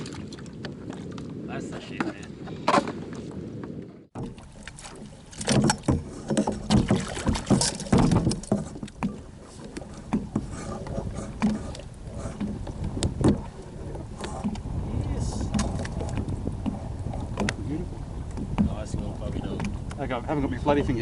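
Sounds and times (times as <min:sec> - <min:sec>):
knocks against a kayak: 0:05.4 - 0:09.2, 0:18.3 - 0:20.0.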